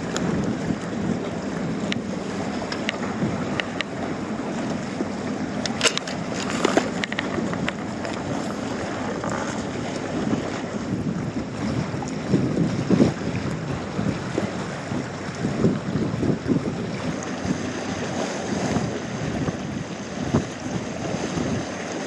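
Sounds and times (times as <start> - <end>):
sea waves: 0.0 - 22.0
wind buffeting microphone: 0.0 - 22.0.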